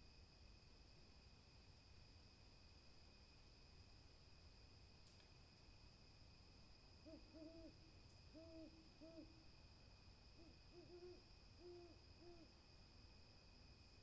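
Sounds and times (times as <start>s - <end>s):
owl hooting: 7.0s - 9.4s, 10.4s - 12.5s.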